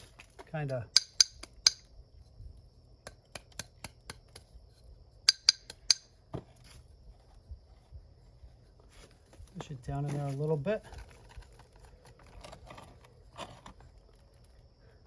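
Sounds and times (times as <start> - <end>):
chopstick tapping plant pot: 0.9 - 1.9, 5.3 - 6.1.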